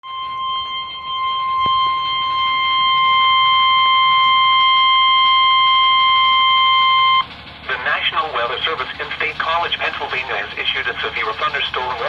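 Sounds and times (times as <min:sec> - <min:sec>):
steady alarm beep from radio speaker: 0:00.0 - 0:07.3.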